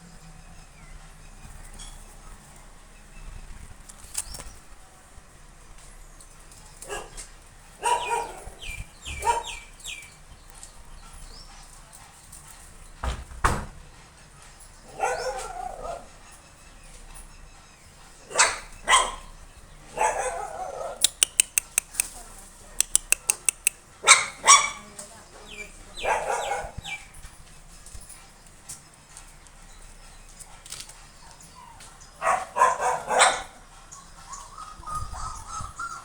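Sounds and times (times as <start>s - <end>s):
puppies barking and yelping: 7.8s - 10.0s, 20.0s - 22.1s, 22.8s - 24.8s, 30.6s - 36.0s
quick sharp clicks: 21.0s - 22.2s, 22.8s - 23.8s
puppy squeals: 34.3s - 36.0s.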